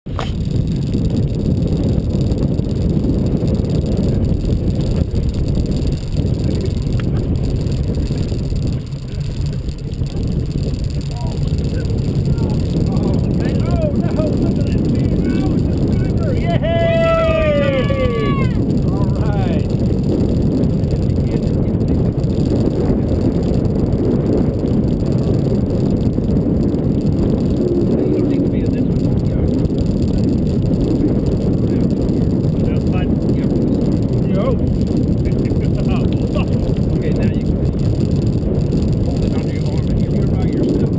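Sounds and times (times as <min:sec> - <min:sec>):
boat motor rumbling: 0:00.0 - 0:40.9
wind on microphone: 0:00.0 - 0:40.9
water: 0:03.8 - 0:20.1.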